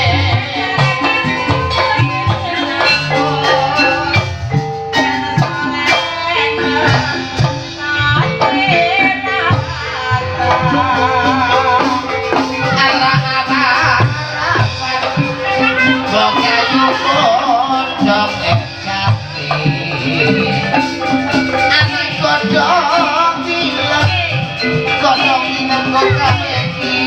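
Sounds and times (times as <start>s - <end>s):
drum strokes: 0.0s - 27.0s
gamelan percussion melody: 0.0s - 27.0s
wavering melodic line: 15.1s - 27.0s.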